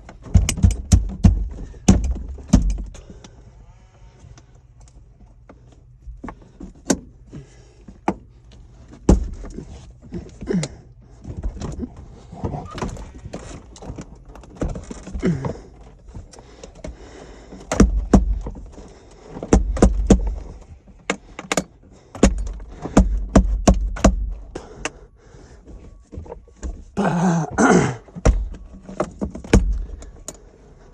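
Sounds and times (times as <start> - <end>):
heavy thuds: 0.0 - 3.2, 11.1 - 21.4, 22.1 - 24.8, 25.6 - 30.3.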